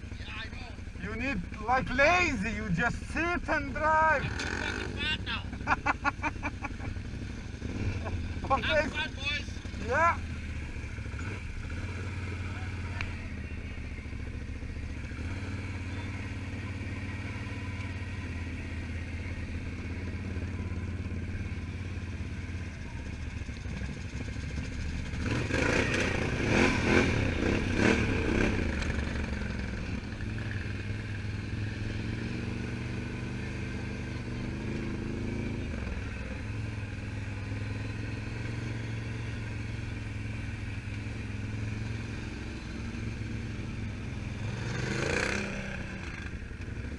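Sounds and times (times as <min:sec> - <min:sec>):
atv engines droning: 0:00.0 - 0:46.9
engine revving: 0:00.6 - 0:05.4, 0:07.1 - 0:13.4, 0:14.9 - 0:22.4, 0:25.0 - 0:46.9.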